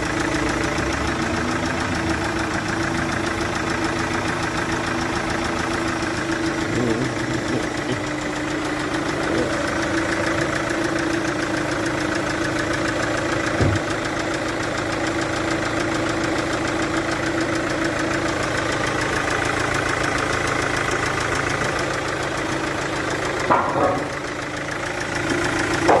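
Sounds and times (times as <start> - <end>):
diesel engine idling with ticking: 0.0 - 26.0
thump: 13.6 - 13.8.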